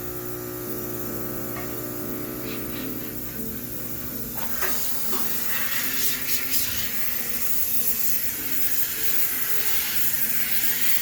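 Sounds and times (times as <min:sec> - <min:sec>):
steam cleaner hissing: 0:04.4 - 0:11.0.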